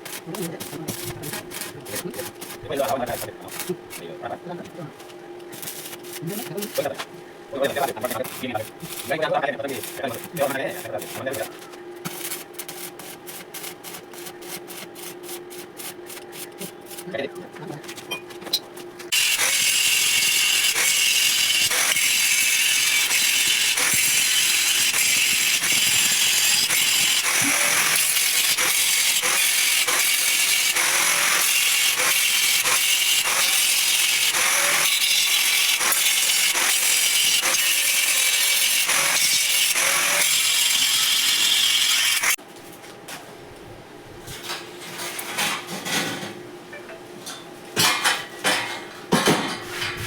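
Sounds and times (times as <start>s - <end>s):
electric arc welding crackling: 0.0s - 4.0s, 5.6s - 6.9s, 7.6s - 11.5s, 12.1s - 17.2s, 19.1s - 42.4s.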